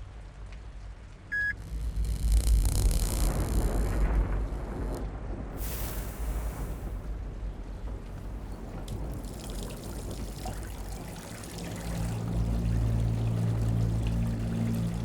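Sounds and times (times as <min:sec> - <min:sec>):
low steady hum: 0:00.0 - 0:15.0
water pouring and trickling: 0:08.0 - 0:15.0.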